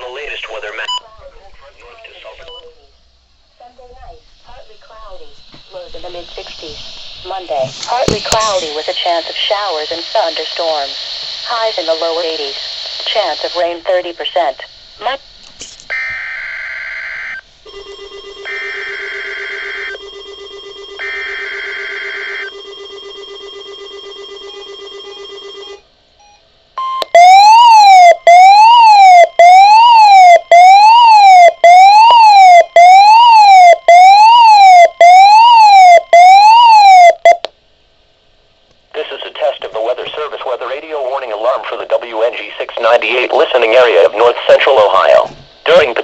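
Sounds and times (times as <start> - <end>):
electronic siren wailing: 15.9 - 25.8, 26.9 - 37.5
steady electronic beep: 26.2 - 27.5, 30.5 - 37.4.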